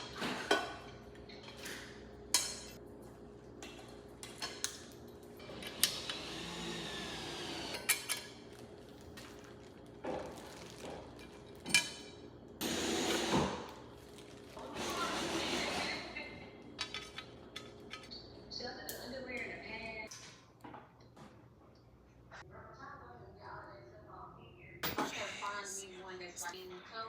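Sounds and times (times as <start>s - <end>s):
dishes and utensils clinking: 0.0s - 2.8s, 10.1s - 12.2s, 16.7s - 18.2s.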